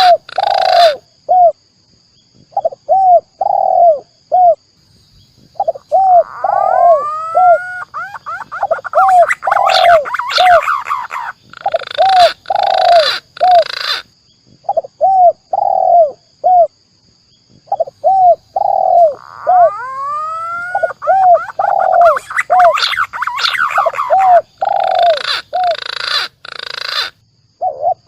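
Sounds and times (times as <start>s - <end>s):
low dove coos: 0.0s - 1.6s, 2.5s - 4.6s, 5.4s - 14.0s, 14.6s - 16.7s, 17.6s - 28.0s.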